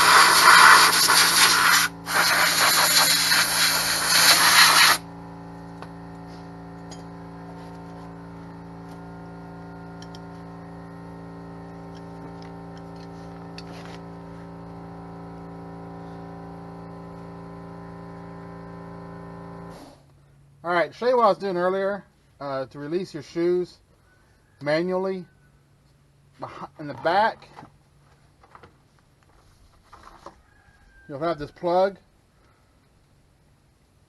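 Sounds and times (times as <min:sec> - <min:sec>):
spray can hissing: 0:00.0 - 0:05.1.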